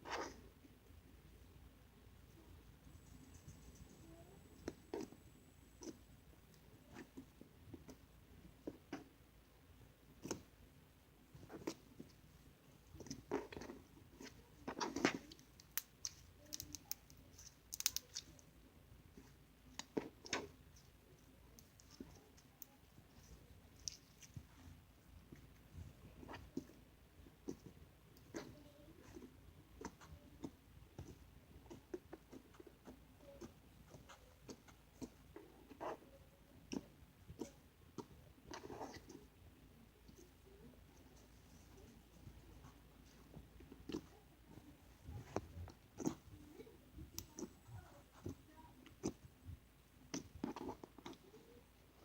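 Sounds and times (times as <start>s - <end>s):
slime squelching: 11.4s - 49.3s, 50.0s - 52.0s
slime clicking and popping: 15.4s - 18.3s.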